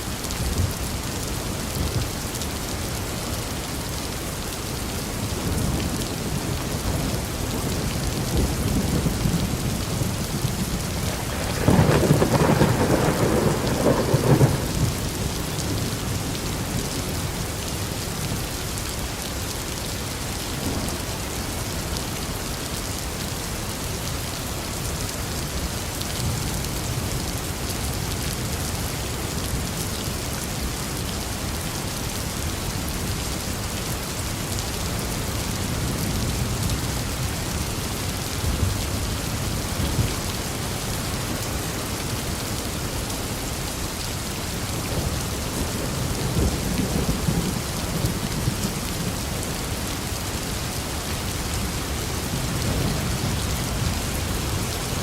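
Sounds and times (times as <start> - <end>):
steady rain falling: 0.0 - 55.0
thunder rolling: 11.1 - 15.0.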